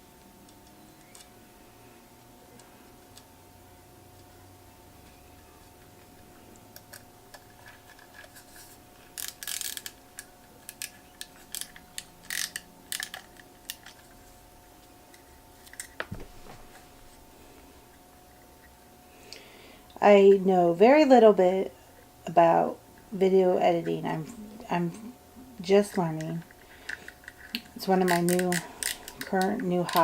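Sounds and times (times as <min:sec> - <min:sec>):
faint steady hum: 0:00.0 - 0:30.0
screwdriver and tiny screws clicking: 0:09.2 - 0:14.0, 0:25.9 - 0:30.0.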